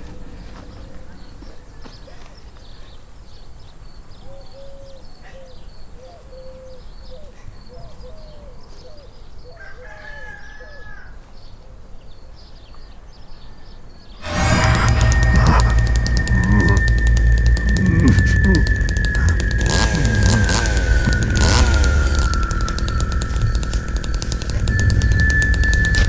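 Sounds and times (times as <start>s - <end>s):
loud music: 14.2s - 26.0s
low steady rumble: 14.2s - 26.0s.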